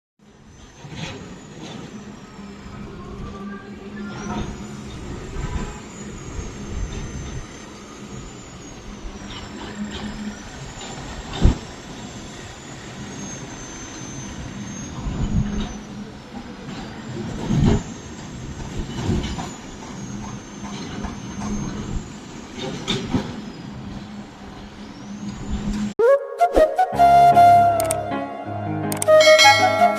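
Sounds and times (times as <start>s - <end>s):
music: 26.0s - 29.9s.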